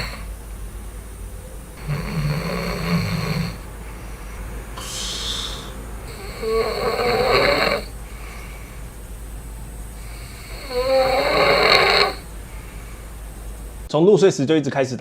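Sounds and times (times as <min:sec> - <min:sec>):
man snoring: 0:00.0 - 0:00.4, 0:01.8 - 0:08.9, 0:10.0 - 0:13.0
hissing breath: 0:00.0 - 0:00.6, 0:01.8 - 0:13.9.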